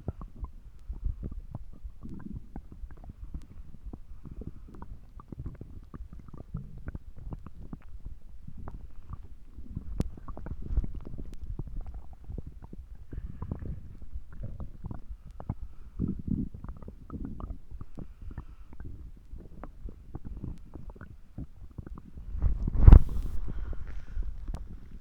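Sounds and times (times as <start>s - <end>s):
stomach gurgling and rumbling: 0.0s - 25.0s.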